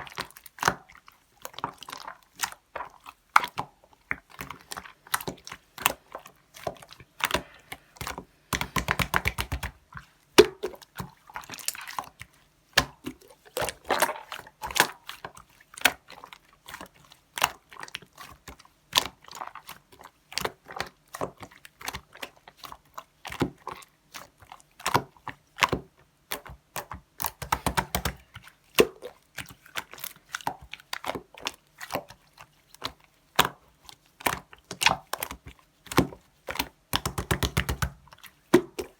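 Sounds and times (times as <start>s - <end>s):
slime squished by hand: 1.5s - 12.1s, 24.8s - 32.2s, 34.2s - 38.9s.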